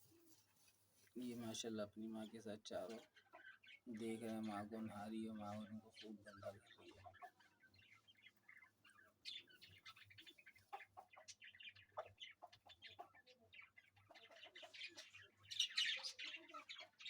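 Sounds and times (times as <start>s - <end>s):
chicks peeping: 0.2s - 17.0s
hen clucking softly: 5.2s - 17.0s.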